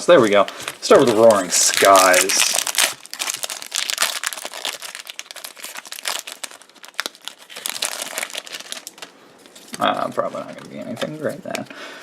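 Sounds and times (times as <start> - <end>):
foil wrapper tearing and crinkling: 0.3 - 9.8.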